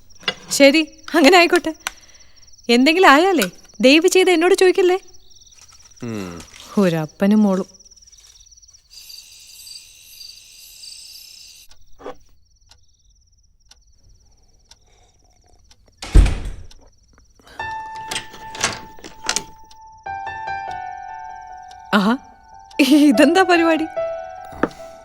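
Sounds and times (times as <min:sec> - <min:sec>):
crickets chirping: 0:00.0 - 0:25.0
loud thump: 0:16.1 - 0:16.7.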